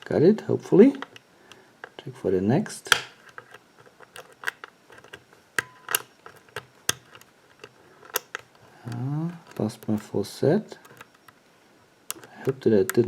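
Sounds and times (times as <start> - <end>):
small metallic clicks of lock pick: 2.9 - 10.0, 10.8 - 11.3, 12.1 - 13.0.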